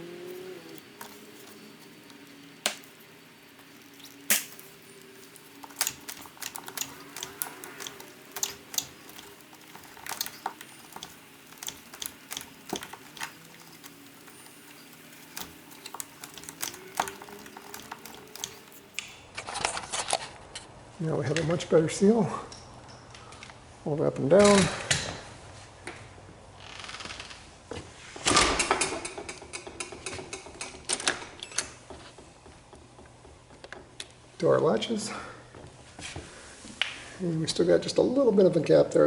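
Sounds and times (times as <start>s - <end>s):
clicks of rubber weatherstrip: 0.0s - 19.2s.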